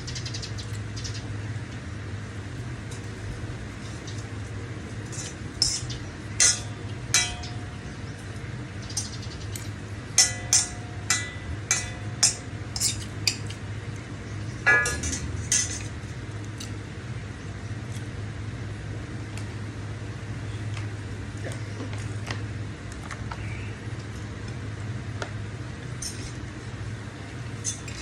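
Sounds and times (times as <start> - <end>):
metal cutlery clinking on a dish: 5.1 - 7.8, 9.0 - 13.6, 14.7 - 15.9, 27.6 - 28.0.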